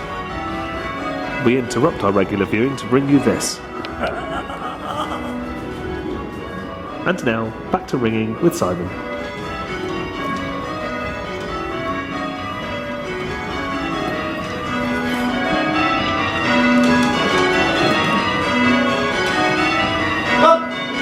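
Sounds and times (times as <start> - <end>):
church bells change ringing: 0.0 - 21.0.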